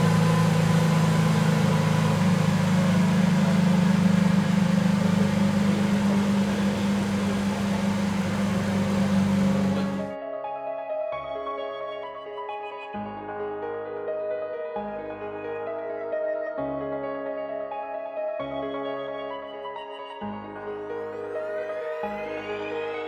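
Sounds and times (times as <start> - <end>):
car engine idling: 0.0 - 10.2.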